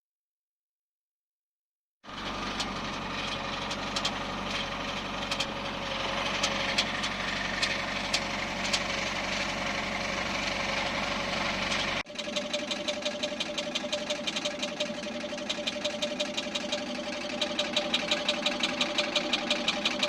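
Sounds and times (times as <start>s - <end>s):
car engine idling: 2.0s - 20.0s.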